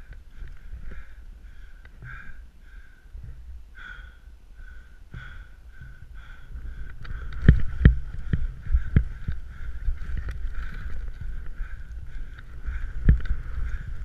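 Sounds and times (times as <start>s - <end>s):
wind rushing over microphone: 5.1s - 14.0s
skis knocking on snow: 6.9s - 11.5s.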